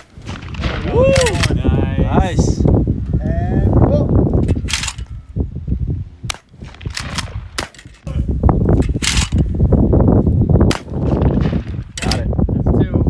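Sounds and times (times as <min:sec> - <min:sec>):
shotgun shots: 0:00.0 - 0:02.4, 0:04.4 - 0:05.2, 0:06.2 - 0:08.1, 0:08.7 - 0:09.7, 0:10.6 - 0:12.4
wind rumble on microphone: 0:00.0 - 0:13.0.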